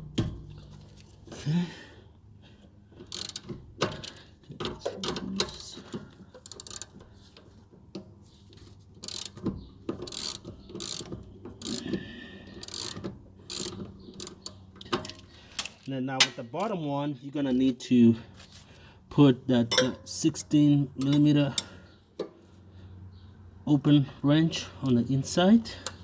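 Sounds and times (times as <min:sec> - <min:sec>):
ratchet wrench clicking: 0:03.1 - 0:04.2, 0:06.4 - 0:06.9, 0:09.0 - 0:09.4, 0:10.0 - 0:12.0, 0:12.6 - 0:15.8.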